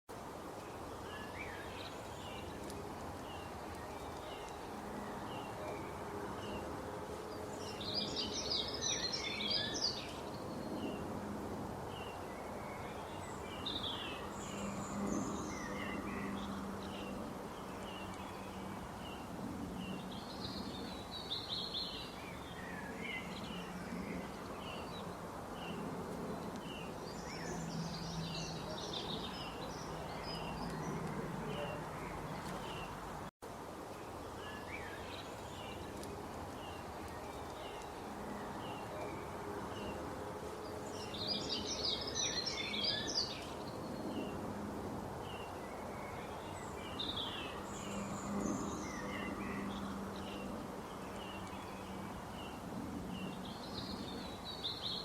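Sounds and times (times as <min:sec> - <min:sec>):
steady background hiss: 0:00.1 - 0:55.0
small birds chirping: 0:00.5 - 0:06.7, 0:07.3 - 0:11.1, 0:11.8 - 0:44.4.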